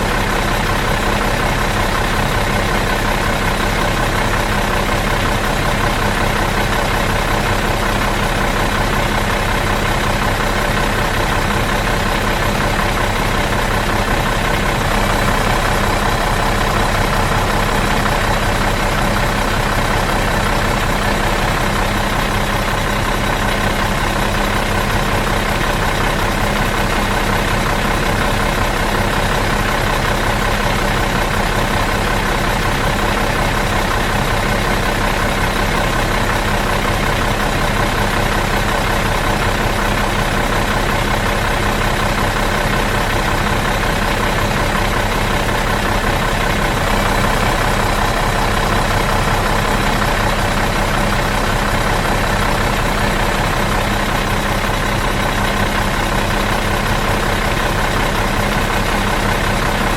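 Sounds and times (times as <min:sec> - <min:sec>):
bus engine idling: 0:00.0 - 0:59.9.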